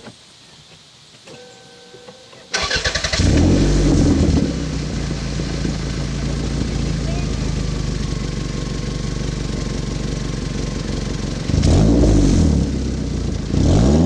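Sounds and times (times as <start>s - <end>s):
brief steady tone: 1.2s - 2.5s
car engine starting and idling: 2.4s - 14.0s.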